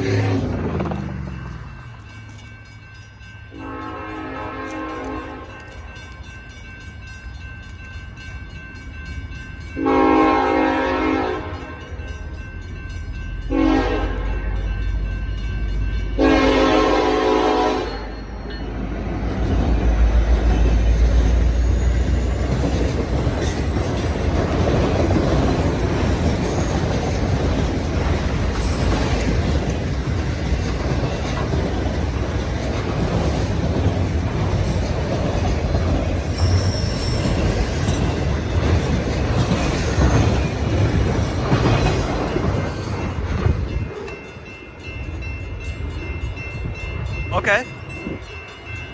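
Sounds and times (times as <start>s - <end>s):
wheels rolling on rails: 0.0s - 3.5s, 18.4s - 47.1s
train horn blasts: 3.5s - 5.6s, 9.8s - 11.9s, 13.5s - 14.5s, 16.2s - 18.2s.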